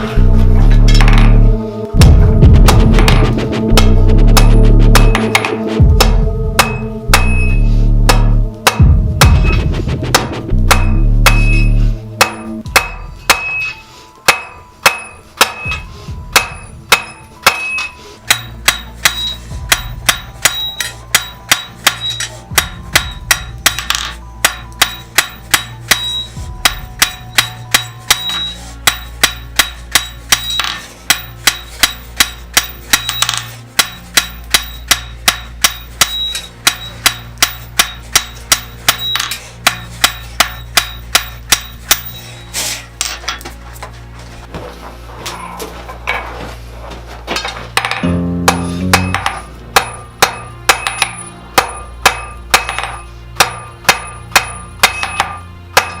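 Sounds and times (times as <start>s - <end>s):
hammer striking steel on anvil: 0.7s - 43.4s, 47.8s - 56.0s
low steady hum: 48.0s - 50.6s.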